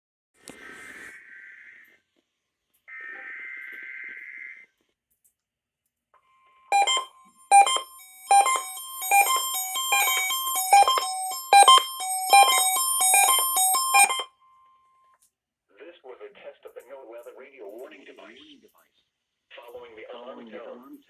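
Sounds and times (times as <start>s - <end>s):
steady alarm tone: 6.7s - 14.3s
struck keyboard-like musical notes: 6.8s - 14.2s.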